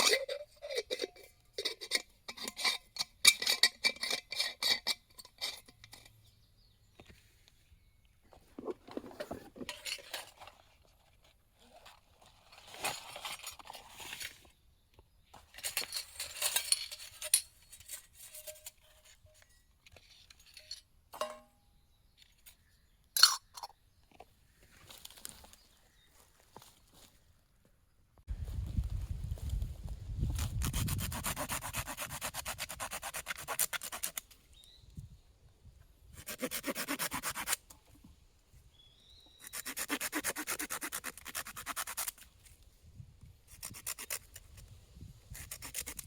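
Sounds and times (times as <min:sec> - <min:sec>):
utensils scraping and rustling: 0:00.0 - 0:06.2, 0:08.5 - 0:14.5, 0:15.4 - 0:21.4
metallic clinks of cookware: 0:20.6 - 0:21.5.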